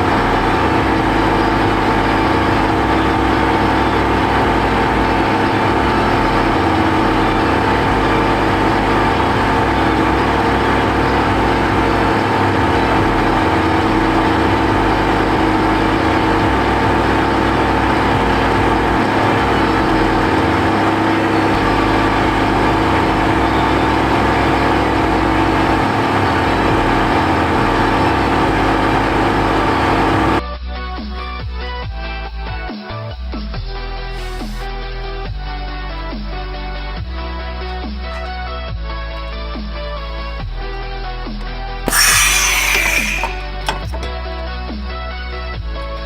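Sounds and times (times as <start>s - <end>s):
car engine idling: 0.0s - 30.4s.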